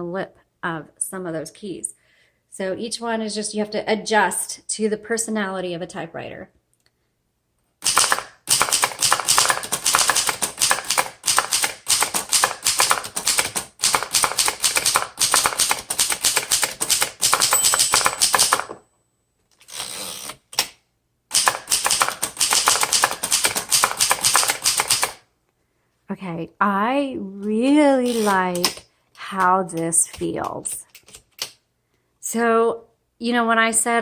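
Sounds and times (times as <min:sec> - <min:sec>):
typewriter key strikes: 0:07.8 - 0:18.8, 0:21.3 - 0:25.2.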